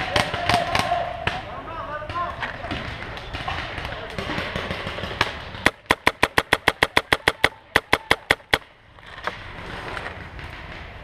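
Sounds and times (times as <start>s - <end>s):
paintball marker shots: 3.4s - 8.7s.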